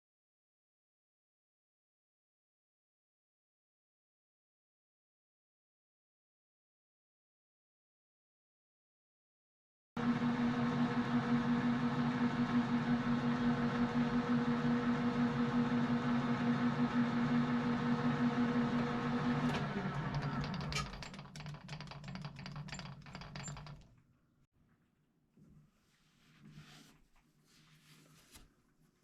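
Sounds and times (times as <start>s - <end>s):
metal lathe humming: 10.0s - 23.8s
knurling tool rolling on brass: 20.1s - 23.8s.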